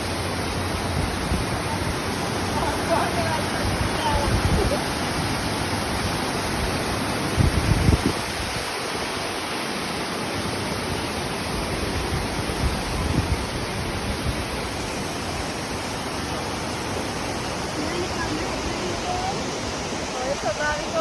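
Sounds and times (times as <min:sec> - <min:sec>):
rushing water: 0:00.0 - 0:21.0
wind thumps on microphone: 0:07.3 - 0:08.8, 0:11.9 - 0:15.0.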